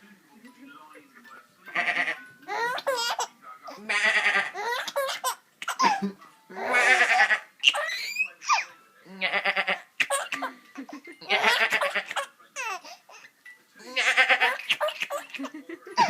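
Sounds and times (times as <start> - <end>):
baby laughing and squealing: 2.5 - 8.7, 9.3 - 10.4, 11.2 - 13.2, 13.9 - 16.0.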